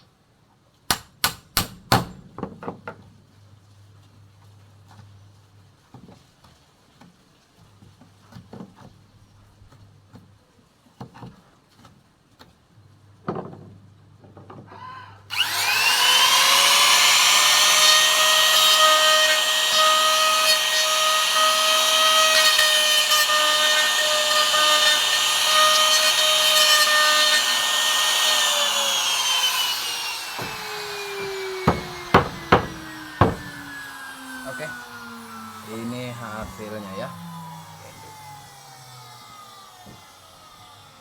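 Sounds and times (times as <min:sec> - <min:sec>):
router high whine: 0:15.3 - 0:41.0.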